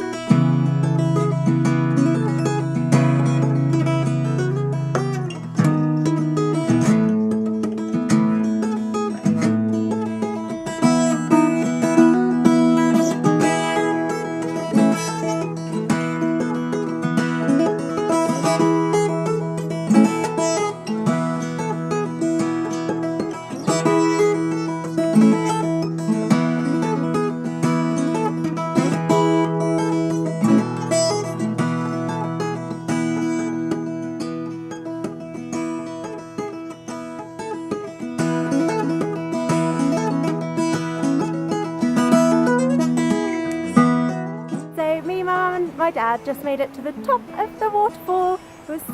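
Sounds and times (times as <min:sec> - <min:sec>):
acoustic guitar: 0:00.0 - 0:48.9.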